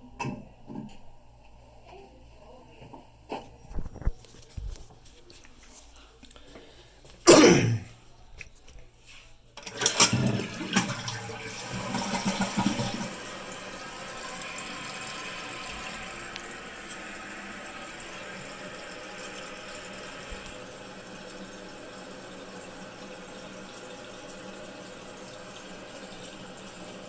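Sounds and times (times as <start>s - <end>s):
toilet flushing: 9.6s - 27.0s
toilet tank refilling hiss: 9.6s - 27.0s.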